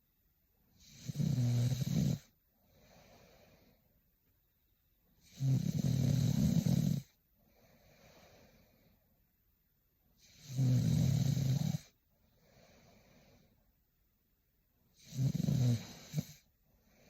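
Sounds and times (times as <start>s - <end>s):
woman snoring: 0.8s - 2.3s, 5.2s - 7.2s, 10.2s - 12.0s, 15.0s - 16.5s
soft breath out: 7.4s - 9.1s, 12.2s - 13.7s.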